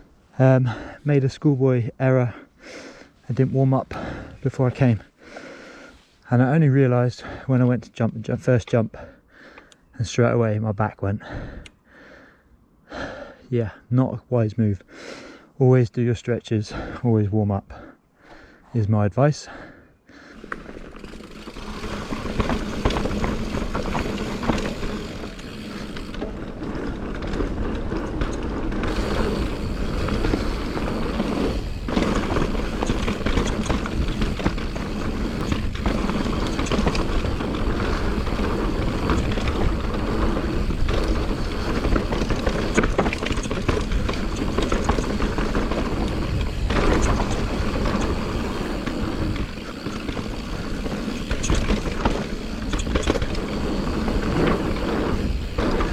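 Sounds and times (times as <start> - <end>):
bike rattling over bumps: 3.4 - 5.0, 20.2 - 55.9
tyres rolling on dirt: 20.3 - 55.9.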